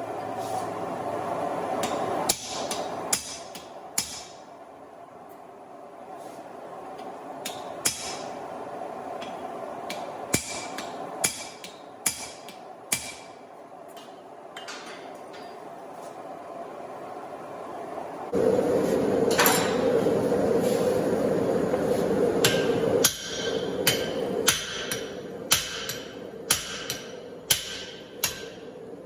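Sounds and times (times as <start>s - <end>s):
hammer striking steel punch: 1.8s - 4.4s, 7.4s - 8.2s, 9.9s - 13.3s, 22.4s - 28.6s.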